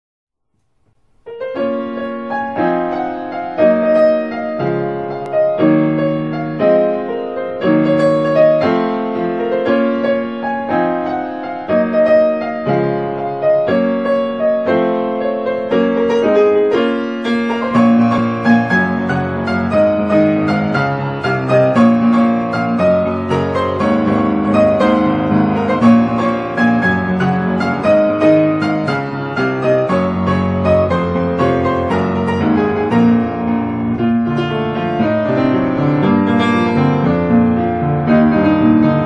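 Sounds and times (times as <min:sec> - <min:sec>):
gentle piano chords: 0:01.1 - 0:39.0.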